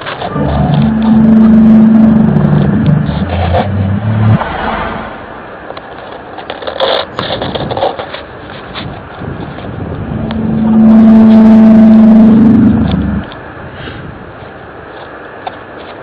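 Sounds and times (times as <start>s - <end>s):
deep droning hum: 0.0s - 5.6s, 9.8s - 13.6s
rushing background noise: 0.0s - 16.0s
scattered clicks: 5.6s - 13.4s.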